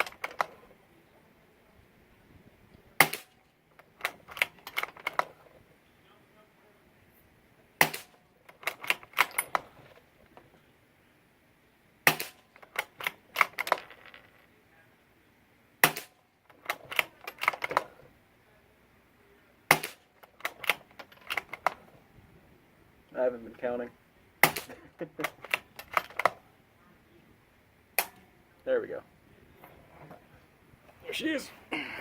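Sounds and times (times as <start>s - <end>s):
suppressed rifle shots: 3.0s - 3.4s, 7.8s - 9.8s, 12.0s - 13.5s, 15.8s - 17.2s, 19.7s - 21.8s, 24.4s - 25.6s
rifle bolt clicks: 3.0s - 5.3s, 19.7s - 21.8s.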